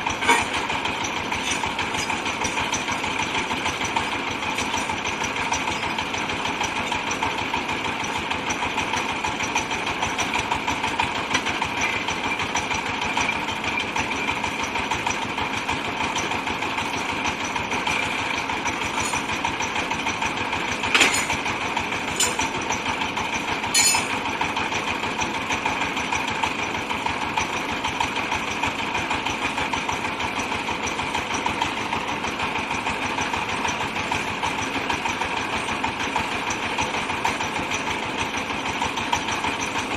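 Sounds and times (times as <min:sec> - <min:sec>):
sharp metallic clanks: 0:00.1 - 0:07.3, 0:17.6 - 0:22.9, 0:23.6 - 0:24.4.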